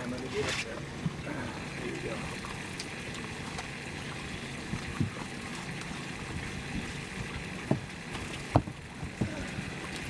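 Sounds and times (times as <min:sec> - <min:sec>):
water lapping against boat hull: 0:00.0 - 0:10.0
knocks on boat: 0:07.6 - 0:07.9, 0:08.5 - 0:09.4.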